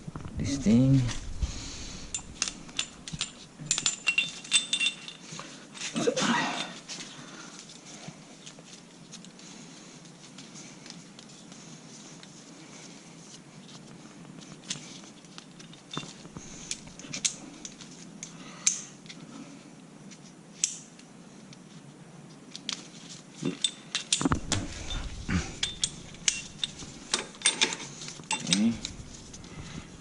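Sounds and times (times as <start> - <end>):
metallic clinks of hand tools: 2.1 - 5.3, 23.6 - 28.9.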